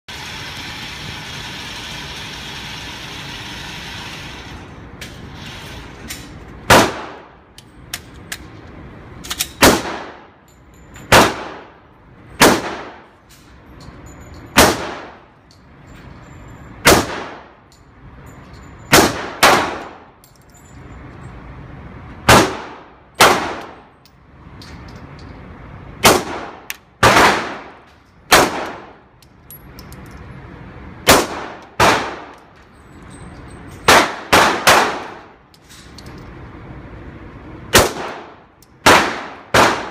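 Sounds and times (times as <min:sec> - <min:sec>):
pistol shots with ringing echo: 0:06.7 - 0:07.4, 0:09.6 - 0:10.3, 0:11.1 - 0:11.8, 0:12.4 - 0:13.1, 0:14.6 - 0:15.2, 0:16.8 - 0:17.6, 0:18.9 - 0:20.1, 0:22.3 - 0:23.8, 0:26.0 - 0:29.0, 0:31.0 - 0:32.3, 0:33.9 - 0:35.3, 0:37.7 - 0:39.9.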